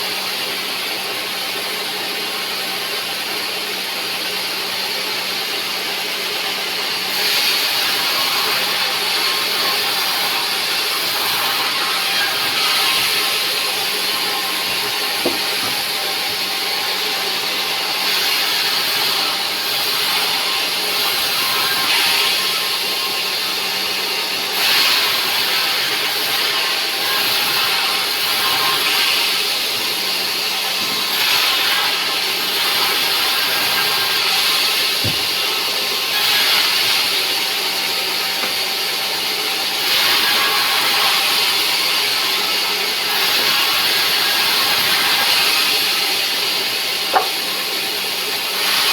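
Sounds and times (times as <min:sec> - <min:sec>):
saw hissing through wood: 0:07.1 - 0:23.0, 0:43.0 - 0:48.9
saw motor hum: 0:46.7 - 0:47.6.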